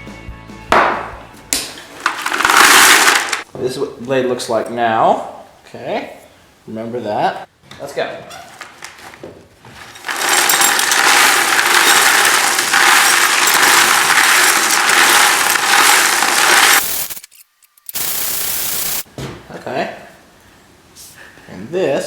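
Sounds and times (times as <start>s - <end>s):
knife grinding on power grinder: 9.9s - 17.2s.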